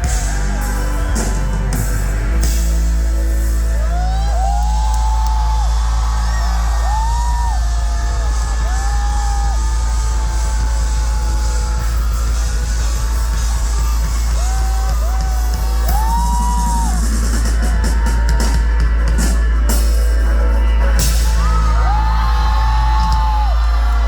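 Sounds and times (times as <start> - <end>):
drum kit: 0.0 - 24.0
heavy bass: 0.0 - 24.0.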